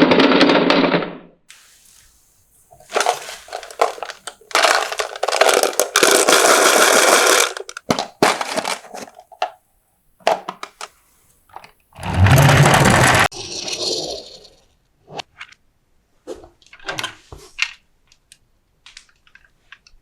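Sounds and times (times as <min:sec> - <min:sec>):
marbles rolling on wooden run: 0:02.8 - 0:07.8, 0:12.0 - 0:13.3.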